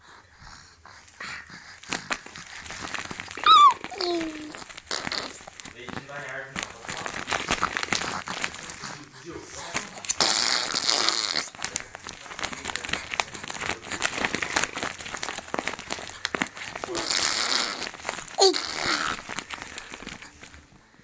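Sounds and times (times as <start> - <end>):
baby spluttering and lip clicks: 0.5 - 20.8
baby blowing: 0.7 - 5.7, 7.5 - 14.0, 16.0 - 20.4
baby squealing: 3.4 - 5.4, 18.4 - 19.2.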